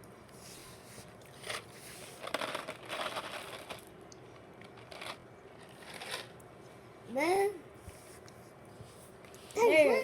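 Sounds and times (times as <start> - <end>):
paper and packaging crinkling: 1.4 - 3.8.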